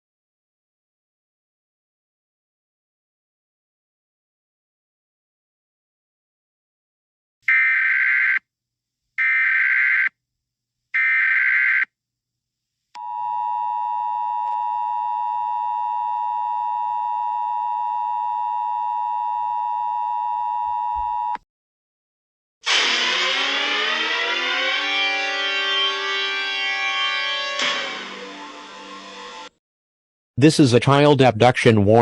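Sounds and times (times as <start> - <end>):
loud sweeping pitch sound: 22.6 - 29.5.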